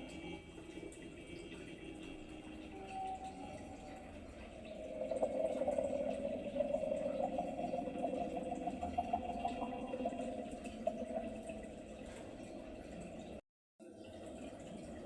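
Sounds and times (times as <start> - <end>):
water bubbling: 0.8 - 13.4.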